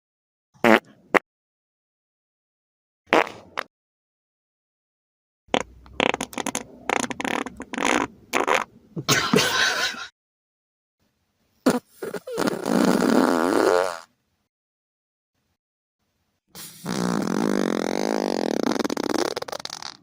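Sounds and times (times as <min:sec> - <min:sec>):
wet farts: 0:00.6 - 0:01.2, 0:03.1 - 0:03.7, 0:05.5 - 0:08.7, 0:11.6 - 0:14.1, 0:16.6 - 0:20.0.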